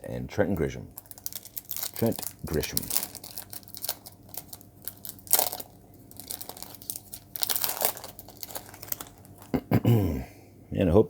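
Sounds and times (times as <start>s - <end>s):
cards rustling: 0.6s - 9.6s
foil card pack crinkling and tearing: 1.0s - 9.6s.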